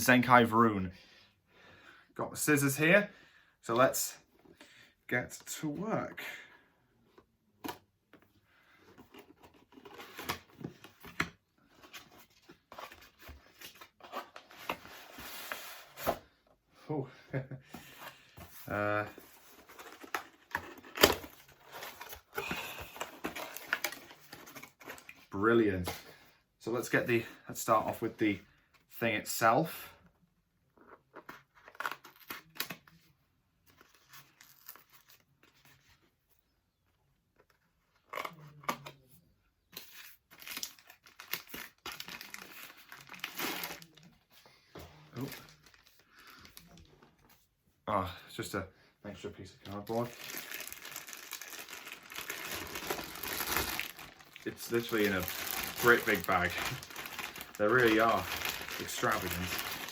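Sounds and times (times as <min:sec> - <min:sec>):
packaging rustling and crinkling: 0:18.6 - 0:25.2, 0:40.3 - 0:44.1, 0:49.6 - 0:59.9.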